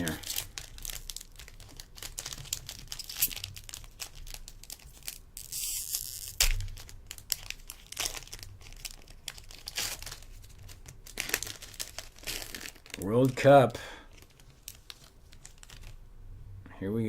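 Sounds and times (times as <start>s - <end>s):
wrapper tearing rip: 0.0s - 13.6s
card pack wrapper crinkling: 0.0s - 16.0s.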